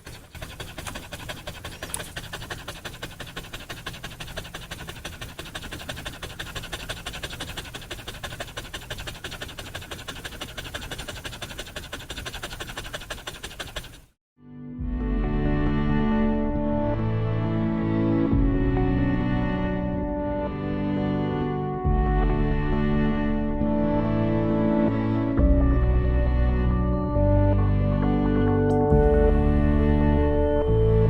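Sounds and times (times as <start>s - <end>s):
dog panting: 0.0s - 14.2s.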